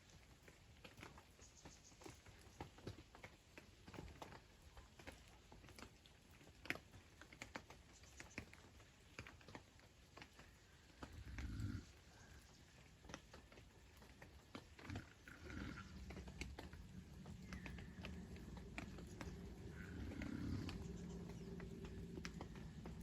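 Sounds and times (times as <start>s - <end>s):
raindrops ticking: 0.0s - 23.0s.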